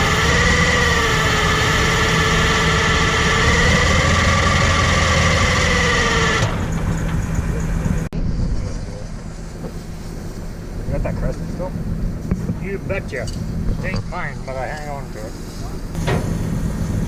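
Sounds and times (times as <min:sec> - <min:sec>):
high wavering whine: 0:00.0 - 0:12.4
excavator diesel engine running: 0:00.0 - 0:17.0.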